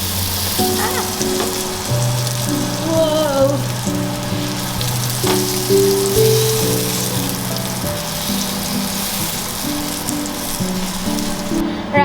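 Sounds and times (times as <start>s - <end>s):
food sizzling in hot oil: 0.0s - 11.6s
background music: 0.0s - 12.0s.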